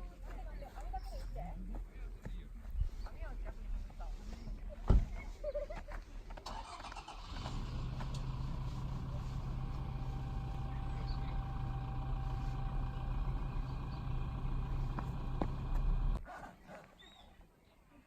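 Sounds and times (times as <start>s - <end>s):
car engine running: 6.9s - 16.2s.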